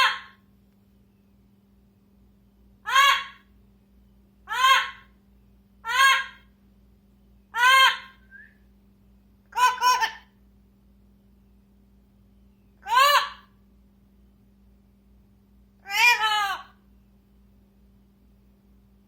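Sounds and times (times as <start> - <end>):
animal calling: 0.0 - 0.4, 2.8 - 3.5, 4.4 - 5.2, 5.8 - 6.5, 7.5 - 8.3, 9.5 - 10.4, 12.8 - 13.5, 15.8 - 16.8.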